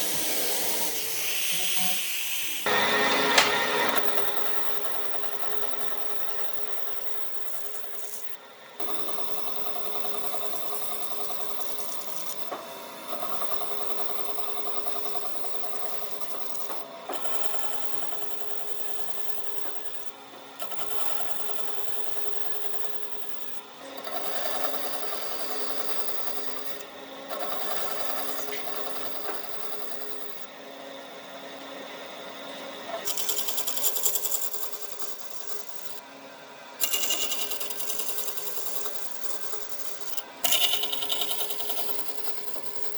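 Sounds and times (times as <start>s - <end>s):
electric power tool buzzing: 0.0s - 4.5s.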